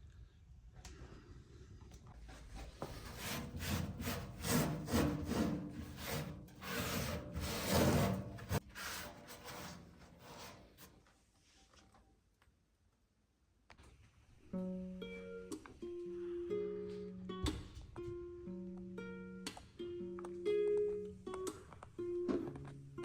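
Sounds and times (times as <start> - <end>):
scraping and rubbing strokes: 2.4 - 11.6.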